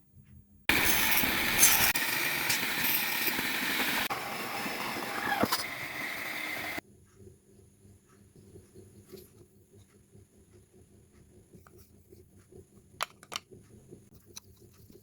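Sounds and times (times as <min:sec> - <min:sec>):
falling motor whine: 0:00.7 - 0:06.8
power tool motor running harshly: 0:00.7 - 0:06.8.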